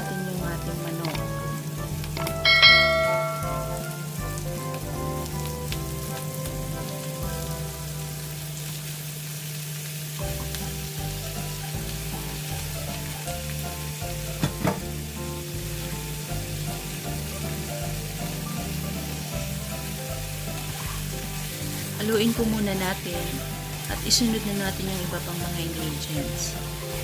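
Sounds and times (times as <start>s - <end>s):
chicken sizzling in oil: 0.0s - 27.0s
sharp knocks: 14.4s - 14.9s
stirring: 15.8s - 27.0s.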